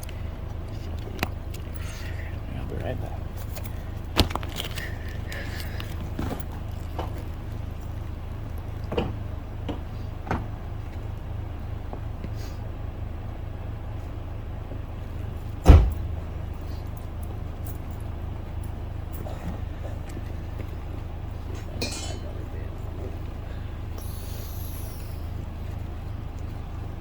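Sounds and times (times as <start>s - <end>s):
low vehicle hum: 0.0s - 27.0s
vehicle door thump: 15.6s - 16.2s.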